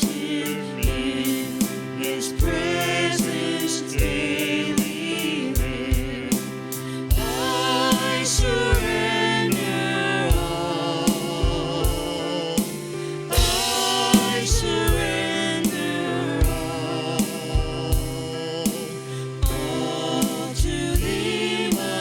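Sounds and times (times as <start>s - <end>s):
drum kit steady beat: 0.0s - 22.0s
voices singing with a band: 0.0s - 22.0s.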